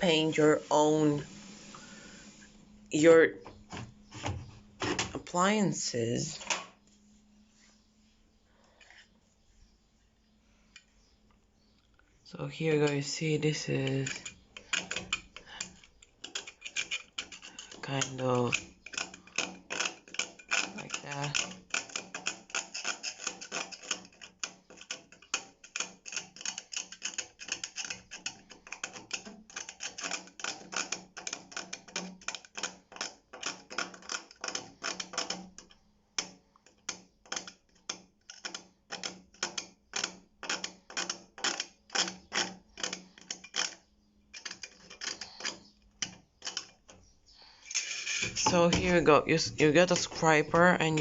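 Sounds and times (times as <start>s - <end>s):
scraper scraping sheet metal: 13.7s - 35.4s, 44.4s - 46.8s, 47.4s - 51.0s.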